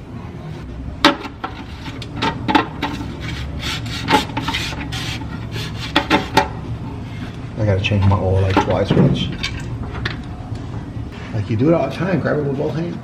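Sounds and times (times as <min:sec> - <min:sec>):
scraping and rubbing on metal parts: 0:00.4 - 0:10.3.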